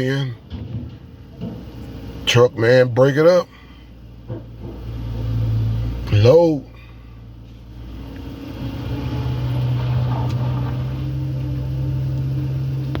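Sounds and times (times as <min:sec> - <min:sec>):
diesel engine revving: 0:01.6 - 0:13.0.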